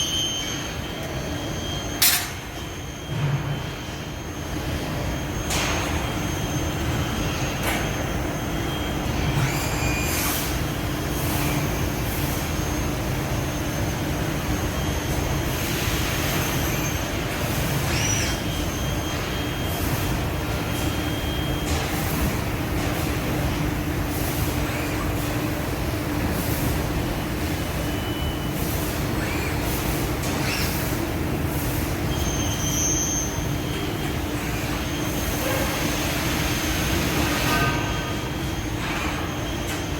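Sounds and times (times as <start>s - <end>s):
metallic squeals: 16.2s - 19.8s, 32.1s - 33.9s.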